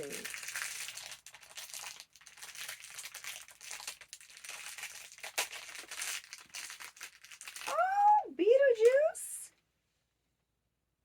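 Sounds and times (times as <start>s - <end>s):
plastic wrapper crinkling: 0.0s - 8.0s.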